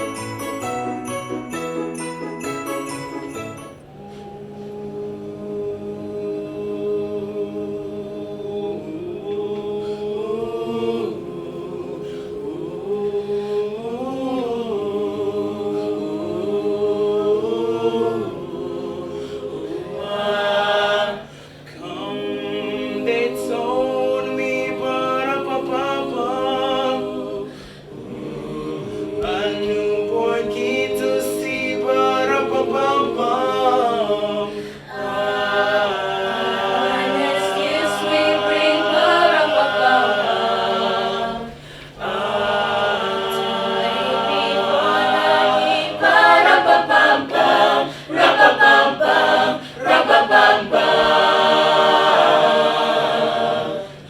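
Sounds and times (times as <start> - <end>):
choir singing wordless vowels: 0.0 - 54.0
singers breathing: 21.2 - 21.8, 27.5 - 28.0, 34.5 - 34.9, 41.5 - 42.0, 47.9 - 48.2, 49.6 - 49.9.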